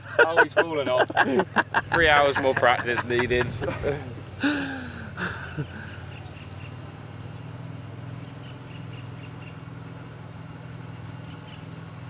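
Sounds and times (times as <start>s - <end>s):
faint bird chirps: 8.2s - 11.8s.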